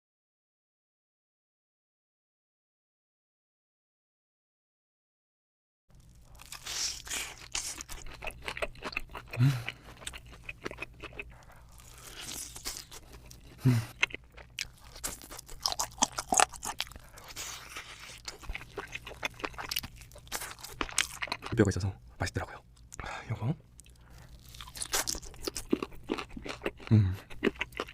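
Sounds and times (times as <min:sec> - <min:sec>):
crunching and wet chewing: 0:05.9 - 0:21.8, 0:23.7 - 0:27.9.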